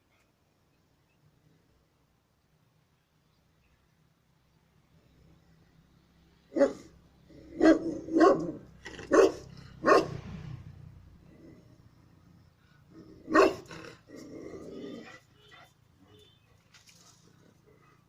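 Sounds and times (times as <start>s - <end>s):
dog barking deeply: 6.5s - 10.2s, 13.2s - 15.2s.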